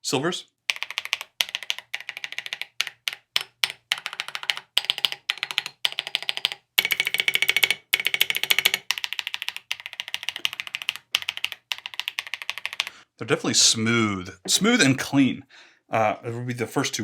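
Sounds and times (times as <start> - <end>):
mechanical keyboard typing: 0.7 - 12.9.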